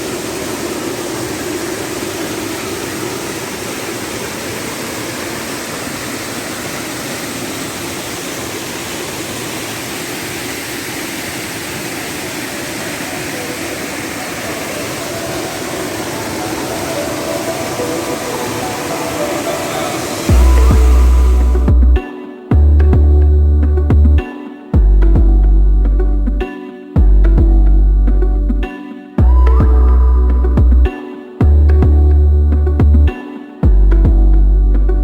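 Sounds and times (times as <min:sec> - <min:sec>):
waterfall roar: 0:00.0 - 0:21.7.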